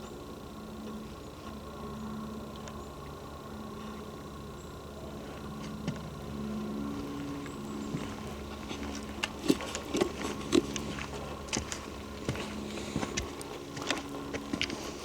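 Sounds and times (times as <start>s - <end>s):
faint steady hum: 0.0s - 15.0s
footsteps: 7.0s - 15.0s.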